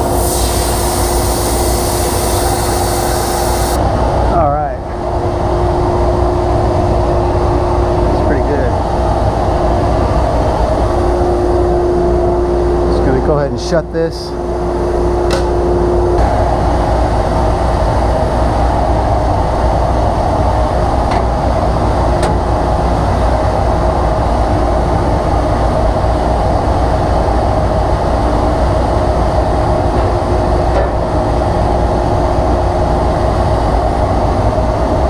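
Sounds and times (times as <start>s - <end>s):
vacuum running through a hose: 0.0s - 3.8s.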